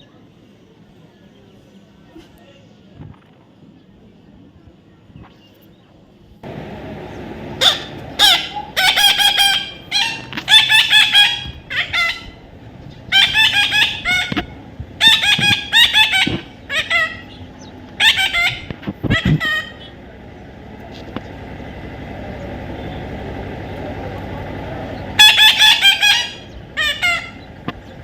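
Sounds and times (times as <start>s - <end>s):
parrot squawking: 7.6s - 12.4s, 13.1s - 20.0s, 25.0s - 27.6s.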